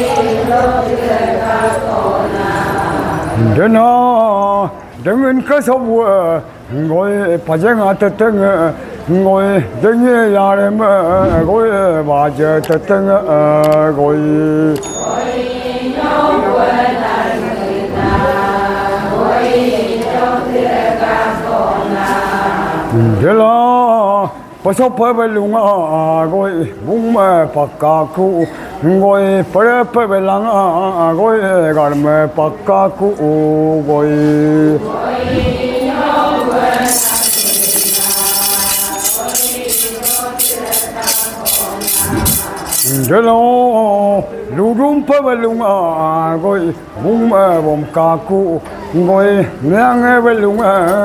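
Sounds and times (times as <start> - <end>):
group vocal chant: 0.0 - 4.4, 13.7 - 24.4, 33.1 - 43.1
person chanting: 0.0 - 51.0
jingling rattle shaking: 36.8 - 43.1.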